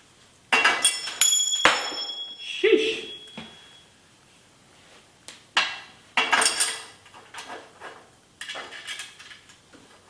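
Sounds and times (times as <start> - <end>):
metal tools clanking: 0.5 - 3.8, 6.2 - 7.0.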